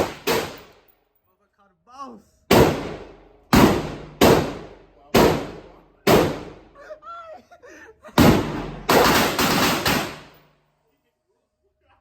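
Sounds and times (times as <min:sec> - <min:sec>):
gunshots with ringing echo: 0:00.0 - 0:00.8, 0:02.5 - 0:06.7, 0:08.2 - 0:10.4.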